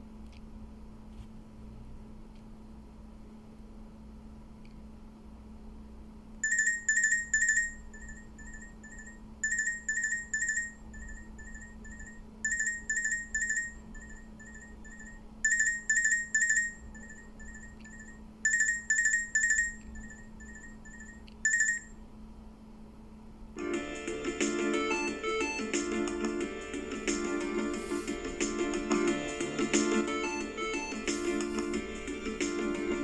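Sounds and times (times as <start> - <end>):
electronic ringtone beeps: 6.4 - 22.0, 24.9 - 26.2, 29.7 - 31.8.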